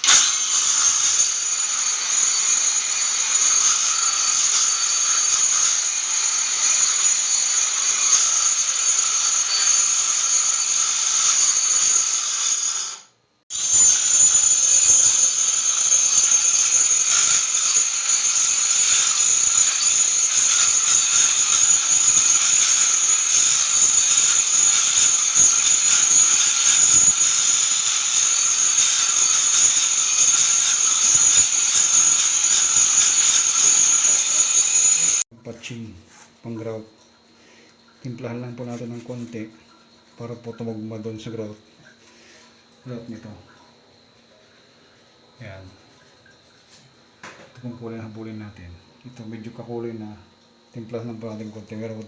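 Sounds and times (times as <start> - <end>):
angle grinder grinding marble: 0.0 - 35.3.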